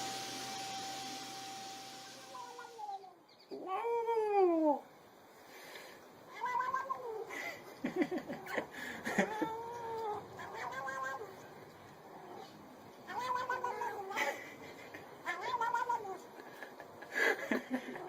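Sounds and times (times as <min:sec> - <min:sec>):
cat meowing: 0:13.1 - 0:14.2.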